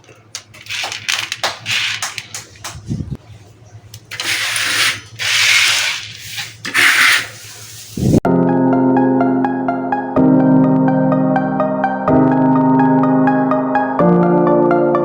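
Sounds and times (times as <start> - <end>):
hissing rasping bursts: 4.1 - 8.2
piano-like music: 8.3 - 15.0.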